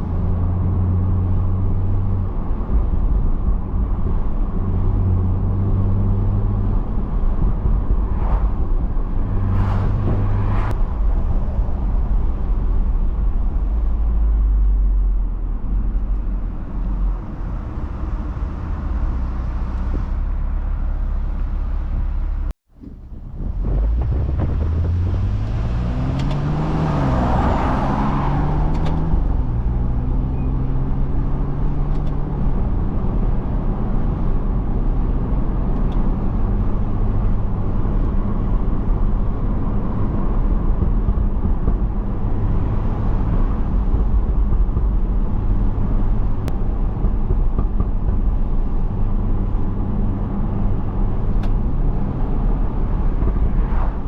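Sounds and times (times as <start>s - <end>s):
car engine revving: 0.0s - 10.8s, 23.2s - 54.0s
road noise: 0.0s - 54.0s.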